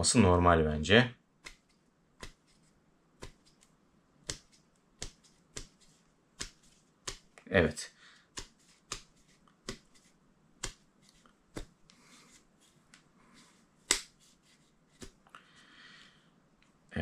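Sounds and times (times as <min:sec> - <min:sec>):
rope rustling: 0:01.4 - 0:07.5, 0:08.2 - 0:15.4.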